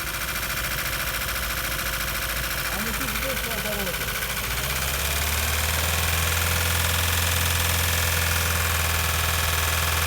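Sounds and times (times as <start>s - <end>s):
car engine running: 0.0s - 7.9s.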